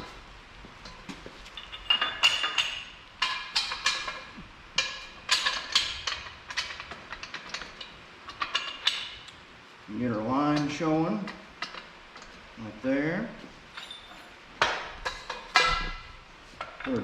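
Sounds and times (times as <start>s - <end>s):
metal clanking and ringing: 0.8s - 9.3s, 13.7s - 17.0s.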